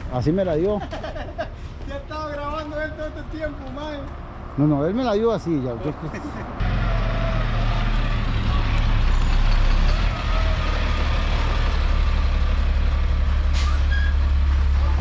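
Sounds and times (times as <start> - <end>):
truck engine droning: 6.3 - 15.0.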